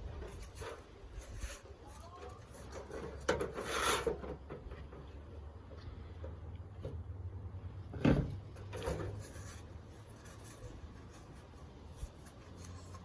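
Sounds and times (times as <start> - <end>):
scraping on cardboard tube: 0.0 - 4.5, 8.6 - 13.0.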